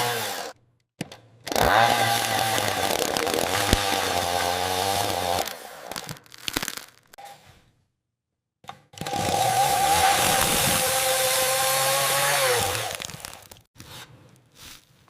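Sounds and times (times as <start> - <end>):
chainsaw running: 0.0 - 0.6, 1.5 - 6.0, 9.0 - 13.6
crackles and knocks: 1.9 - 4.6.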